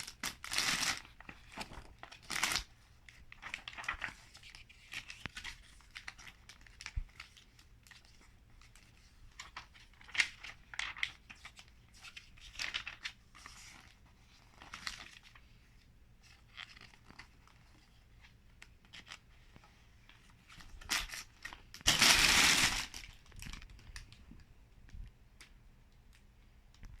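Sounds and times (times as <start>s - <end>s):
plastic bags crinkling: 20.8s - 24.2s.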